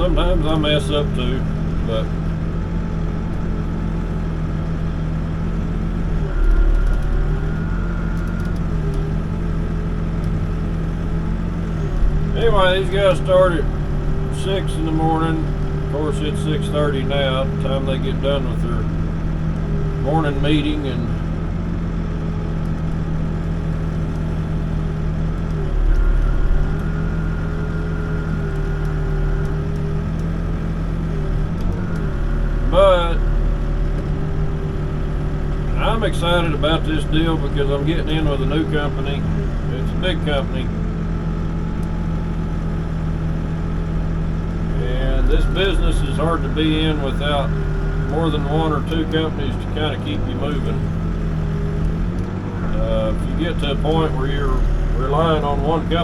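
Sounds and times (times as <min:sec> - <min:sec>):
backhoe diesel engine running: 0:00.0 - 0:56.0
faint high whine: 0:44.6 - 0:51.3.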